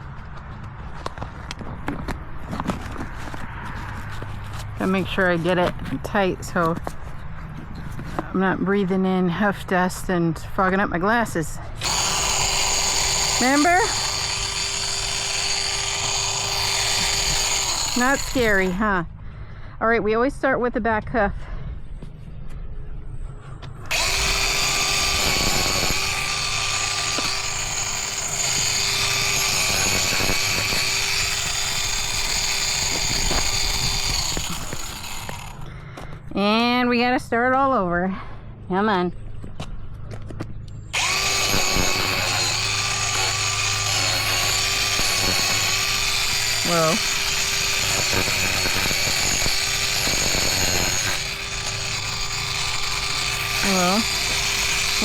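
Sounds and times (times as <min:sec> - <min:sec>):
angle grinder grinding hoof: 0:11.2 - 0:19.0, 0:23.9 - 0:36.1, 0:40.9 - 0:55.0.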